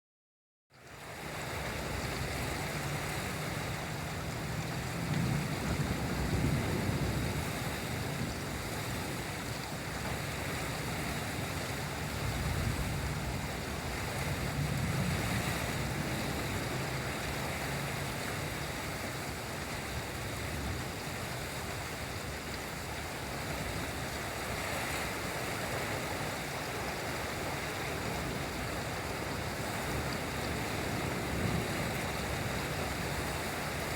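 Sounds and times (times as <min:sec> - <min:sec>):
heavy rain hiss: 0:01.0 - 0:33.9
rolling thunder rumbles: 0:04.3 - 0:09.3, 0:12.0 - 0:18.2, 0:28.2 - 0:33.9.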